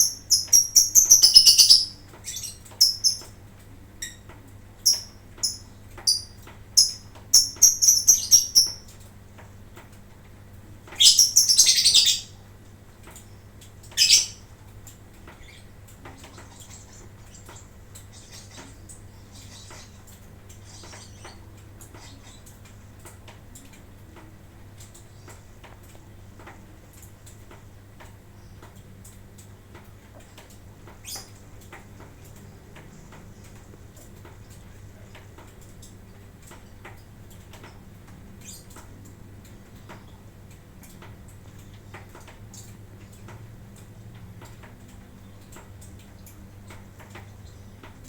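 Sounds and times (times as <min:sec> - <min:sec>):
lovebird chirps: 0:00.0 - 0:03.3, 0:04.8 - 0:08.9, 0:11.0 - 0:12.4, 0:14.0 - 0:14.4.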